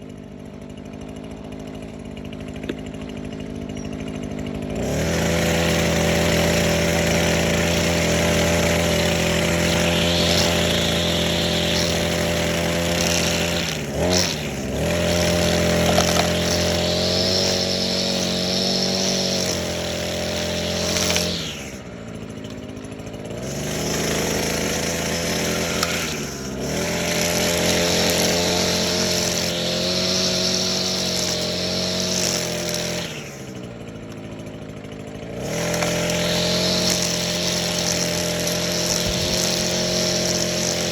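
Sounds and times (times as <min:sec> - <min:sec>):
string trimmer engine revving: 0:00.0 - 0:40.9.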